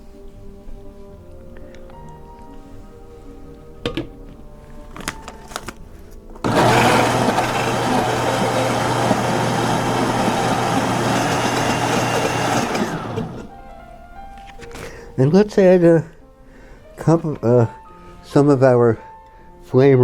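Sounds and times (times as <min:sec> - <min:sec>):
kitchen mixer motor running: 0:06.4 - 0:13.6.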